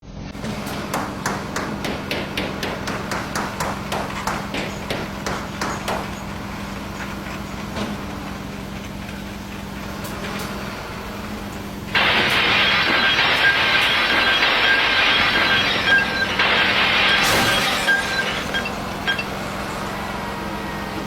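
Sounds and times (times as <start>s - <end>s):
hammer striking: 0.9s - 6.1s, 12.0s - 19.2s.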